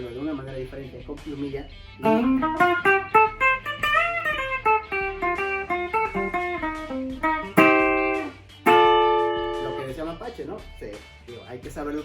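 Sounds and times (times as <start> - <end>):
electric ukulele melody: 2.0 - 10.0.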